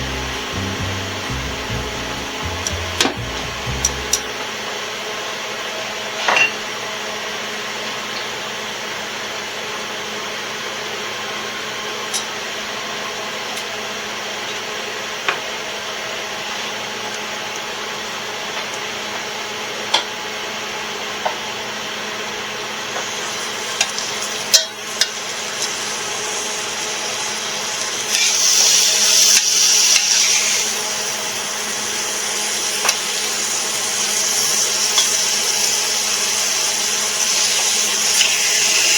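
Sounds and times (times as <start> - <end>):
meat sizzling on a grill: 23.0 - 38.9.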